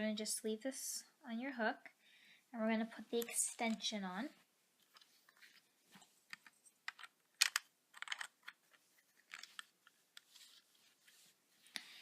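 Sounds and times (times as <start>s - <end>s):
plastic clicks: 6.3s - 10.3s
hands rustling: 8.8s - 12.0s.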